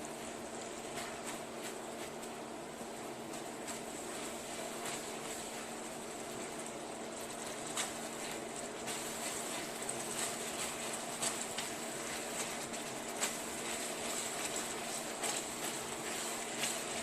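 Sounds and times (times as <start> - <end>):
sauce sizzling in a pan: 0.0 - 17.0.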